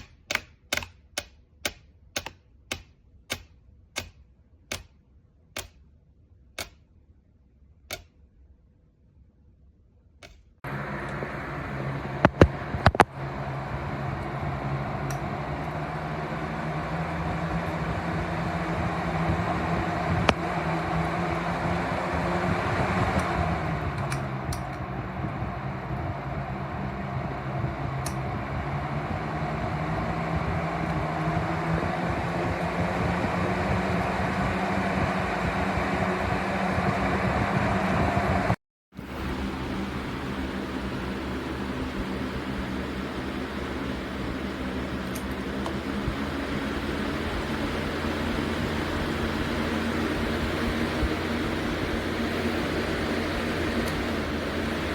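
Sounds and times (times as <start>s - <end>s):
sharp clicks: 0.0s - 5.8s, 6.6s - 6.9s, 7.9s - 8.2s
box fan running: 10.6s - 54.9s.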